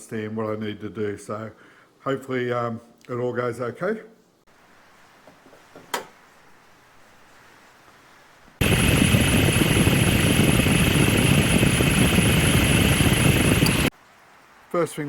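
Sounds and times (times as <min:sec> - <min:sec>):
engine running with high whine: 0:08.6 - 0:13.9.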